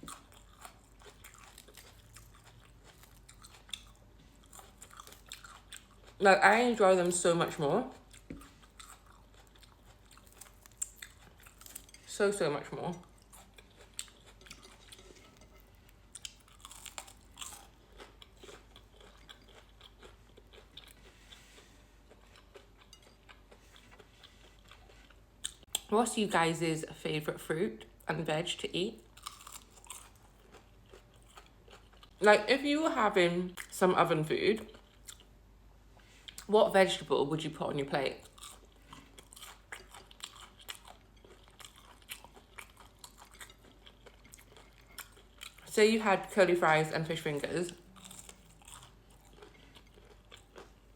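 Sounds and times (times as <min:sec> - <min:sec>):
person chewing crunchy food: 0:00.0 - 0:06.2, 0:07.8 - 0:12.1, 0:12.9 - 0:25.9, 0:29.0 - 0:32.2, 0:34.6 - 0:35.3, 0:38.2 - 0:45.7, 0:47.4 - 0:50.9.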